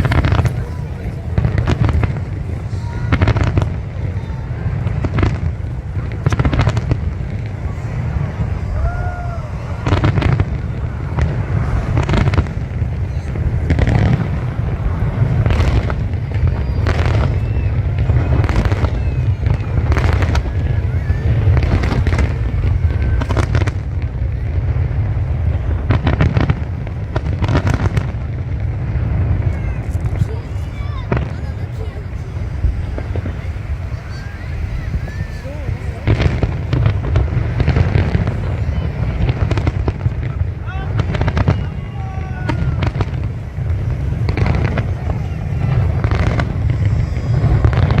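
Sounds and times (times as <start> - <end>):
fireworks booming: 0.0 - 48.0
fireworks crackling bangs: 0.0 - 48.0.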